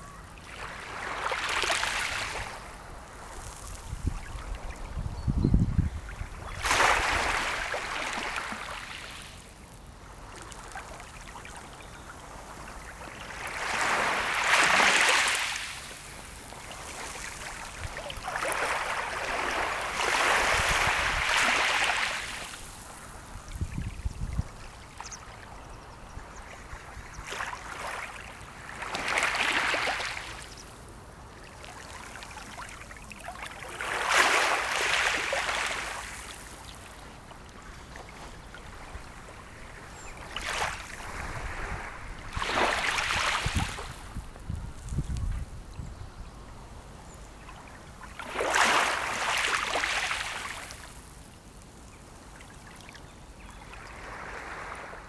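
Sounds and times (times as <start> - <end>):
sea waves washing onto shore: 12.2 - 23.5.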